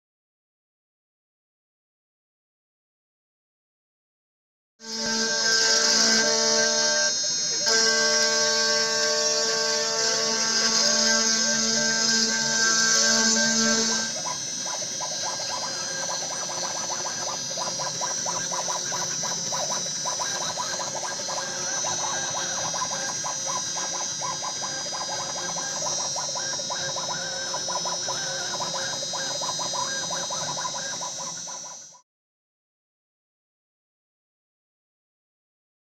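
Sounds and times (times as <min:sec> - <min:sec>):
router spindle whining: 0:04.8 - 0:32.0
bit chattering while cutting wood: 0:04.9 - 0:32.0.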